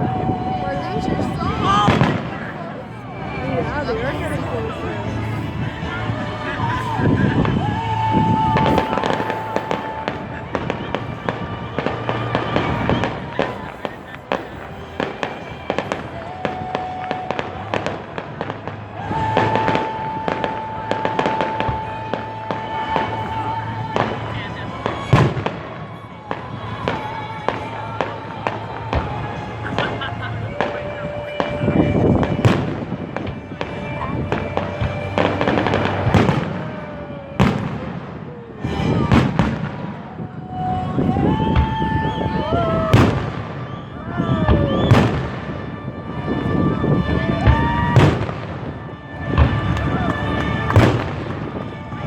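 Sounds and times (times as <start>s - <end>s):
steady high whistle: 0.0s - 52.0s
fireworks popping and banging: 6.6s - 40.2s, 41.0s - 43.8s, 44.5s - 45.7s, 46.4s - 52.0s
fireworks cracking and popping: 44.4s - 45.7s, 46.5s - 52.0s.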